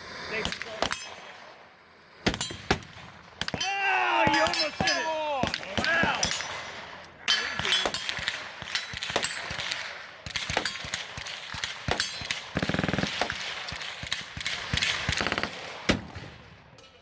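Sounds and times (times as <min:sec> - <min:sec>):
gunshot cracks: 0:02.2 - 0:03.7
rapid gunfire rattle: 0:07.6 - 0:16.2.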